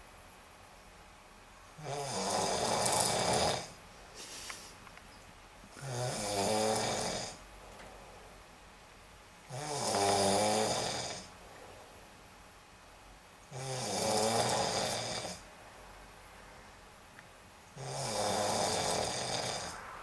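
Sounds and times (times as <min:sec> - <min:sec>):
person snoring: 0:01.8 - 0:03.8, 0:05.8 - 0:07.4, 0:09.5 - 0:11.3, 0:17.8 - 0:19.9
quiet breathing: 0:18.6 - 0:20.0.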